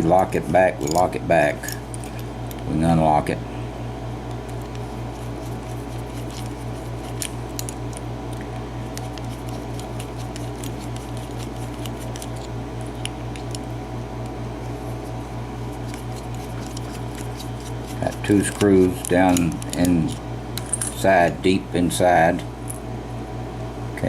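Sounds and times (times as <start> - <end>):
steady low hum: 0.0 - 24.0
metal tool clicks and scrapes: 15.8 - 21.0.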